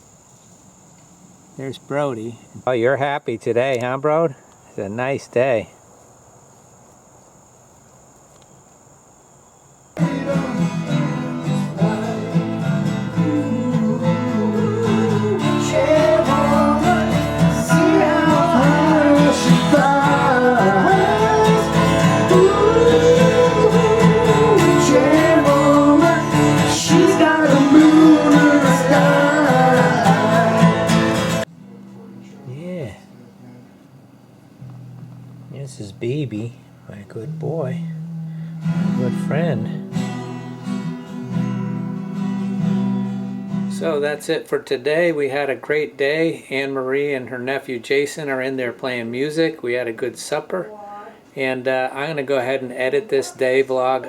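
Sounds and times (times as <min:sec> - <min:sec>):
person singing: 0:10.0 - 0:32.1, 0:36.9 - 0:40.4
acoustic guitar: 0:10.0 - 0:47.2.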